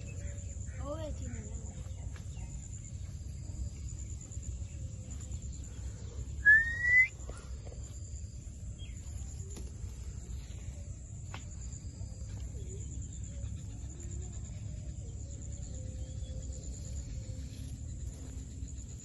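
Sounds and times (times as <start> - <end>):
parrot whistle call: 6.4 - 7.1.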